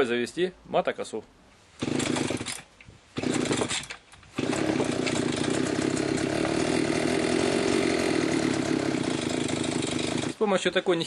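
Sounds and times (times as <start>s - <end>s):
brushcutter engine running: 1.8s - 2.6s, 3.2s - 10.4s
pull-start: 1.8s - 10.4s.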